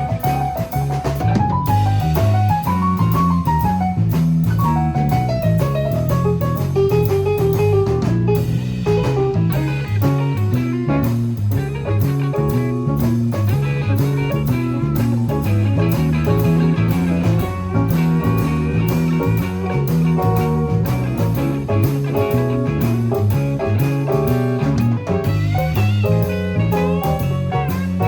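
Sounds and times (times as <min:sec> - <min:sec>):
instrumental band playing: 0:00.0 - 0:28.0.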